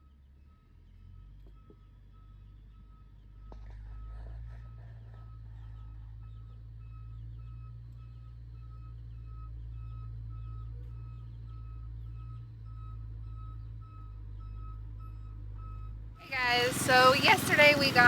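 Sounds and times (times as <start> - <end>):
vehicle engine rumbling: 3.2 - 18.0
reversing alarm beeping: 11.7 - 18.0.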